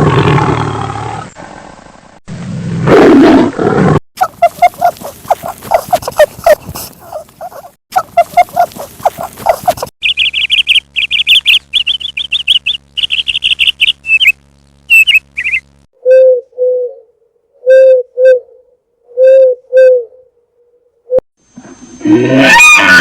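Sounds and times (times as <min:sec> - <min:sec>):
small bird chirping: 0:04.3 - 0:15.7.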